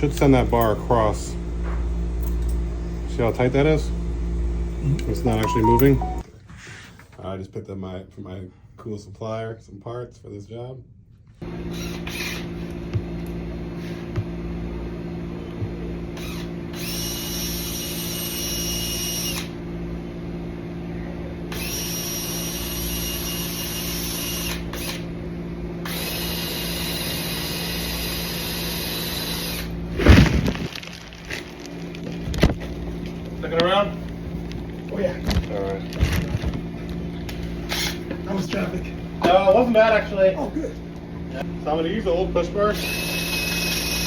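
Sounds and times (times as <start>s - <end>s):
power tool whining: 11.6s - 12.8s, 21.5s - 25.2s, 25.8s - 30.6s, 37.3s - 38.2s, 42.7s - 44.0s.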